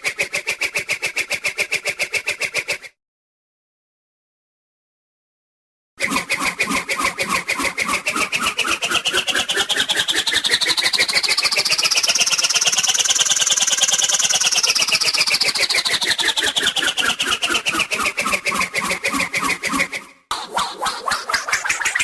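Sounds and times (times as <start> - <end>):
pulsing cartoon whirr: 6.0 - 22.0.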